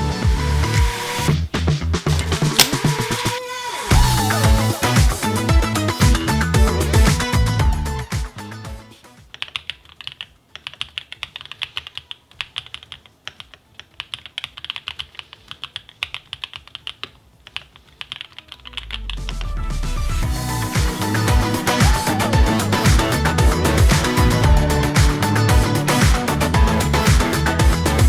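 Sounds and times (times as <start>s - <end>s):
electronic dance music: 3.9s - 9.2s, 18.6s - 28.0s
mechanical keyboard typing: 9.3s - 19.5s.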